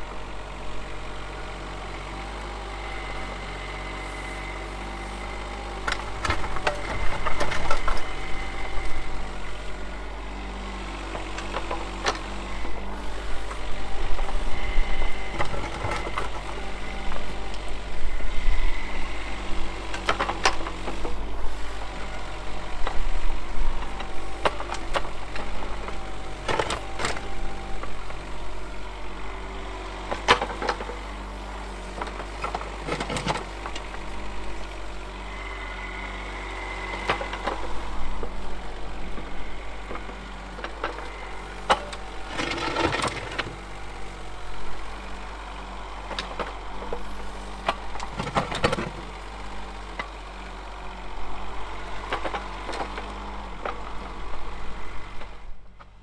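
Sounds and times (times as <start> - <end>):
diesel engine running: 0.0 - 56.0
excavator bucket clunking: 41.6 - 43.7.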